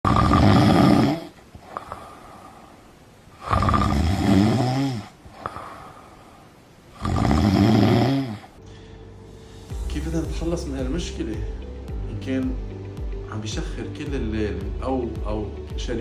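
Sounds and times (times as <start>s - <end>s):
person snoring loudly: 0.1s - 2.4s, 3.4s - 6.1s, 7.0s - 8.5s.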